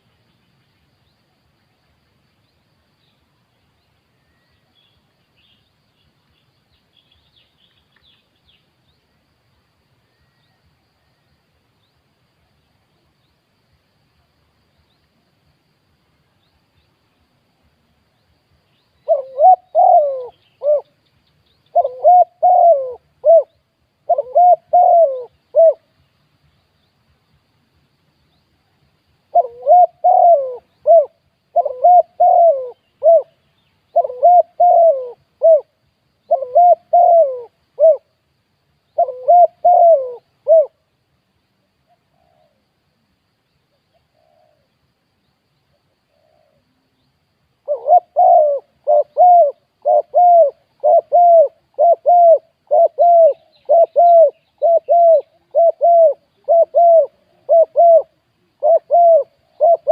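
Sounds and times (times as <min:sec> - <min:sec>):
dove cooing: 0:19.0 - 0:20.9, 0:21.7 - 0:25.9, 0:29.3 - 0:35.7, 0:36.3 - 0:38.1, 0:39.0 - 0:40.8, 0:43.9 - 0:44.7, 0:47.6 - 0:59.9.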